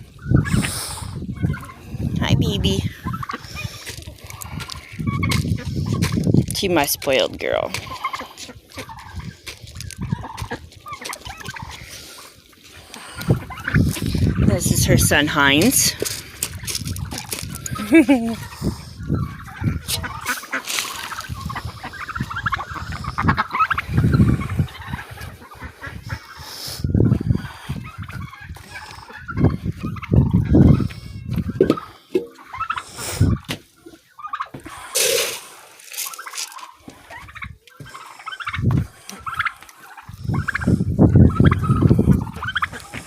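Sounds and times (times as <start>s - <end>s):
wind rumble on microphone: 0.0s - 8.0s, 8.8s - 10.9s, 13.1s - 20.3s, 21.1s - 31.9s, 32.9s - 33.5s, 38.5s - 43.0s
turkeys and poultry calling: 0.0s - 43.0s
ducks and geese honking: 0.1s - 43.0s.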